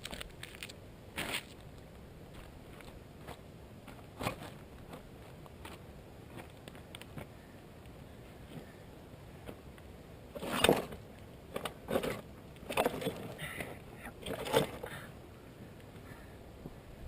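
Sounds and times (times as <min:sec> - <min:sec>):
motorcycle scraping on rocks: 0:02.3 - 0:06.6, 0:10.3 - 0:13.6.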